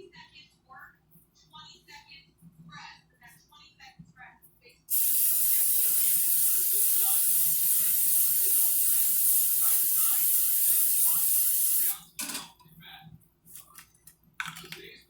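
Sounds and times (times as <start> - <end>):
aerosol cooking spray hissing: 4.9 - 12.0.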